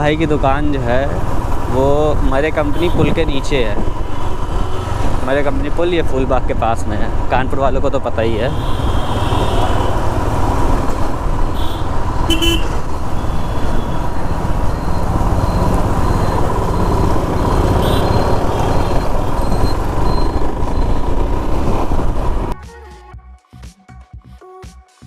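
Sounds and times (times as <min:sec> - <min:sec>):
traffic noise: 0:00.0 - 0:22.6
vehicle horn toots: 0:02.7 - 0:03.2, 0:08.5 - 0:10.0, 0:11.6 - 0:14.1, 0:17.7 - 0:19.0
motorcycle engine: 0:08.6 - 0:22.6.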